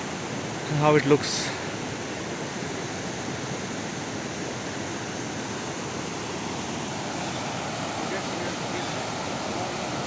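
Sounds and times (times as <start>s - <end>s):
waterfall rushing: 0.0s - 10.0s.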